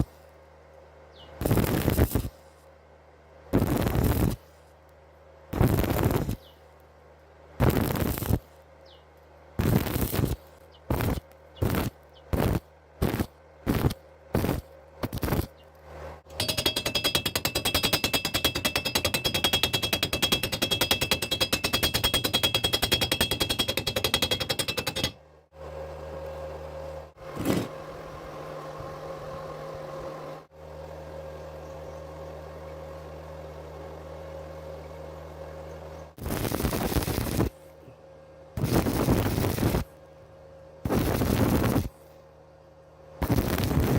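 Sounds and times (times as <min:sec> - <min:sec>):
low steady hum: 0:00.0 - 0:43.9
welding arc crackling: 0:01.4 - 0:02.3, 0:03.6 - 0:04.4, 0:05.6 - 0:06.4, 0:07.6 - 0:08.5, 0:09.6 - 0:15.6, 0:36.2 - 0:37.5, 0:38.6 - 0:39.9, 0:40.9 - 0:41.9, 0:43.2 - 0:43.9.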